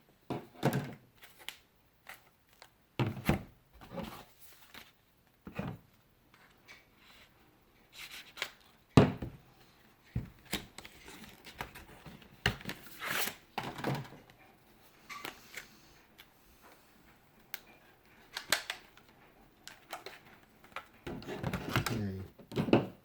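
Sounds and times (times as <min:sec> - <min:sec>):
plastic packaging clicking and crinkling: 0:17.4 - 0:22.1.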